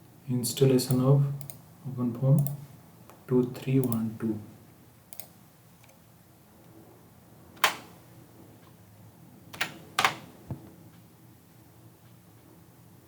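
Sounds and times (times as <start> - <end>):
computer keyboard keystrokes: 0.9 - 1.6, 5.1 - 5.3.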